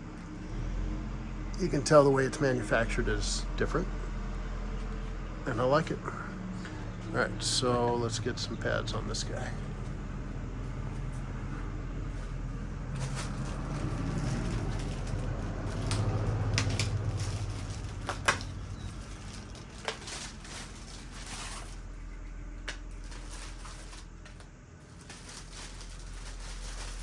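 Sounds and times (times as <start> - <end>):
steady low hum: 2.5 - 27.0
rustling: 10.6 - 27.0.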